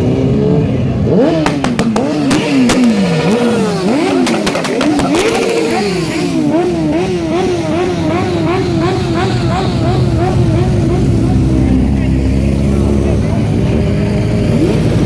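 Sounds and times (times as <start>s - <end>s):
motorcycle engine revving: 0.0s - 15.0s
sharp cracks: 1.3s - 6.0s.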